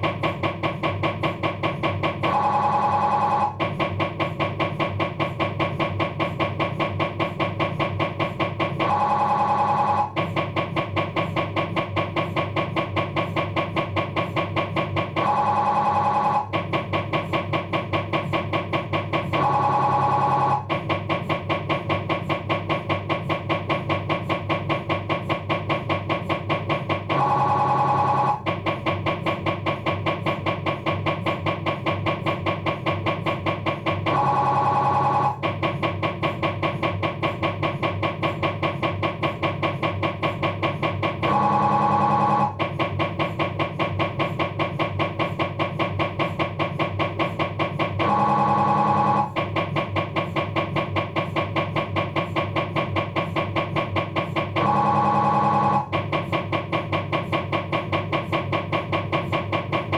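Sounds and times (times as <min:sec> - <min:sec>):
mri scanner buzzing pulses: 0:00.0 - 0:59.9
bright steady scanner tone: 0:00.4 - 0:04.7, 0:07.0 - 0:10.4, 0:14.8 - 0:18.1, 0:18.7 - 0:23.2, 0:26.1 - 0:38.2, 0:39.5 - 0:49.6, 0:54.0 - 0:56.3.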